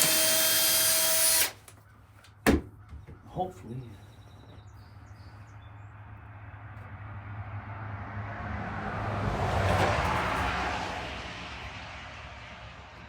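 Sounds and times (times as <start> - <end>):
vehicle passing by: 5.4 - 13.0.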